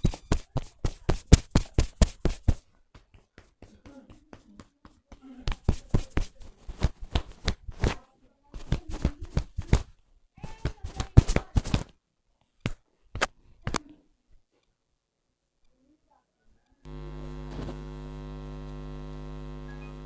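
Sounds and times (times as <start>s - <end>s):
hands slapping a head: 0.0s - 3.5s, 8.6s - 11.9s, 12.6s - 13.8s.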